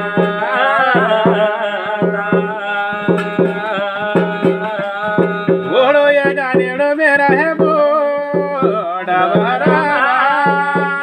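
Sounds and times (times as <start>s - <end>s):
regular drum strokes: 0.0s - 11.0s
wavering sung melody: 0.0s - 11.0s.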